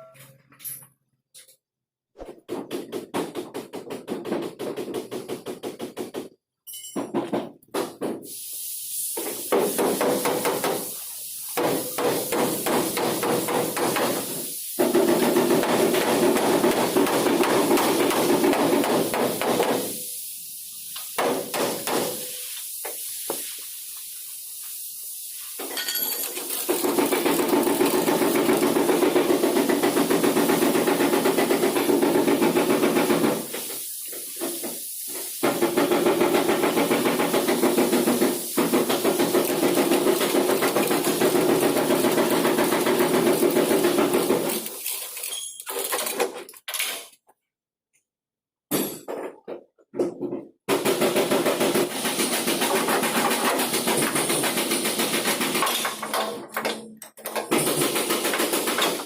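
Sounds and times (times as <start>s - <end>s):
rapid hammering: 2.2s - 6.4s, 9.5s - 10.8s, 11.6s - 19.9s, 21.2s - 22.2s, 26.7s - 33.5s, 35.4s - 44.6s, 50.7s - 56.7s, 57.4s - 59.0s.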